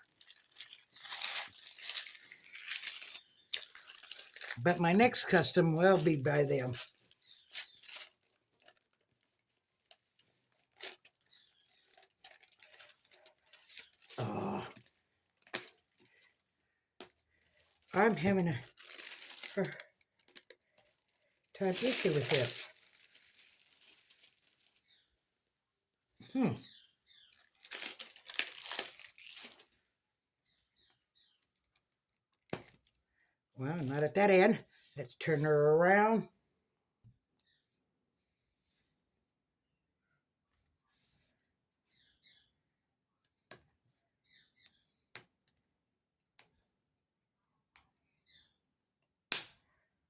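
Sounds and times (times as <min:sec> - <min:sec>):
packaging crinkles: 0:00.0 - 0:25.0, 0:27.1 - 0:29.8
packaging rustling and tearing: 0:00.0 - 0:25.0, 0:27.2 - 0:29.7.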